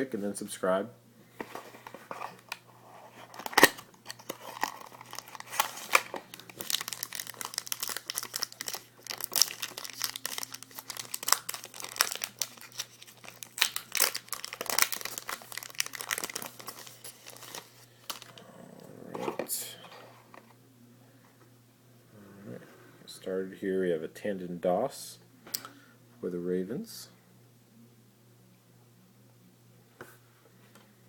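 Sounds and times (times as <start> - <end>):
packaging crinkling and rustling: 1.4 - 18.4
packaging tearing: 2.1 - 18.3.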